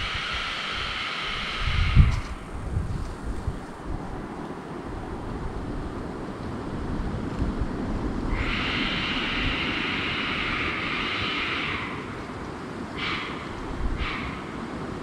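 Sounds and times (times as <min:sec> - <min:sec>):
harsh shrieking whistle: 0:00.0 - 0:02.4, 0:08.3 - 0:14.8
wind rumble on microphone: 0:00.0 - 0:15.0.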